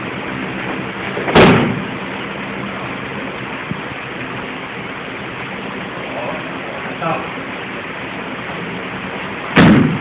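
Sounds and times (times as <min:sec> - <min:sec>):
steady background hum: 0:00.0 - 0:10.0
body slapping onto a mat: 0:09.6 - 0:10.0.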